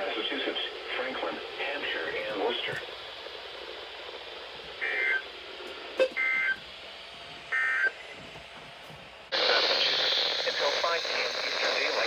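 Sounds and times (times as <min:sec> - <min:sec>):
radio hiss: 0:00.0 - 0:08.3, 0:09.3 - 0:12.0
buzzy digital data tones: 0:04.8 - 0:05.4.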